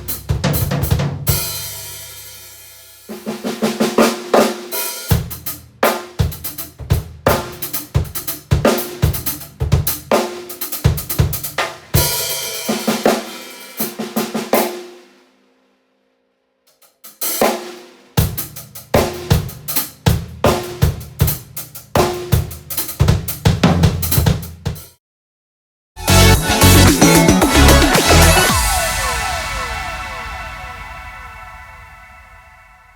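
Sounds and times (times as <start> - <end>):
acoustic drum kit played hard: 0.0 - 15.2, 17.0 - 25.0, 26.0 - 32.5
cymbal crash ringing out: 26.6 - 32.9.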